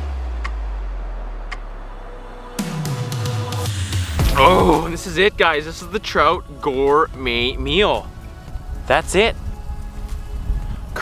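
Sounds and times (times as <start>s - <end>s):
deep bass note: 0.0s - 6.7s.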